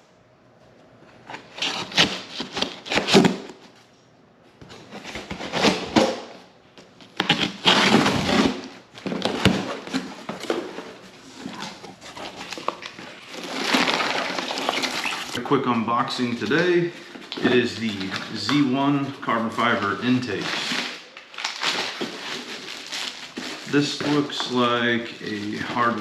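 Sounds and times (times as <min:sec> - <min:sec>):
packaging rustling and crunching: 0:07.0 - 0:15.4, 0:16.2 - 0:26.0.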